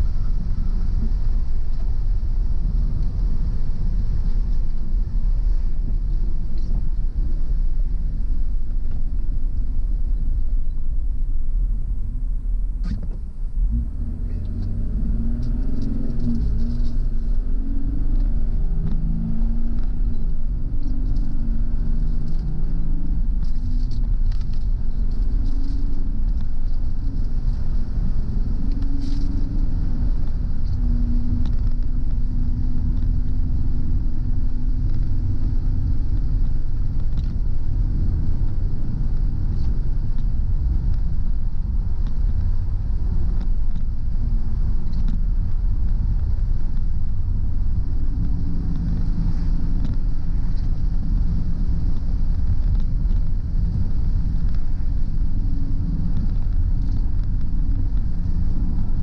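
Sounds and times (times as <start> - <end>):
car engine and road rumble: 0.0 - 59.0.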